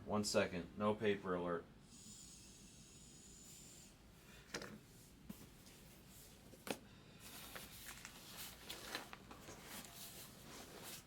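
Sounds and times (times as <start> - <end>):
small clicks and paper rustles: 6.5 - 11.0.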